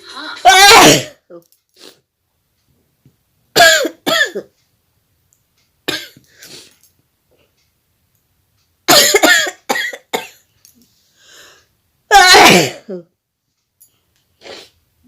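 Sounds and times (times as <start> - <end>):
person sneezing: 0.0 - 1.2, 12.1 - 13.0, 14.4 - 14.8.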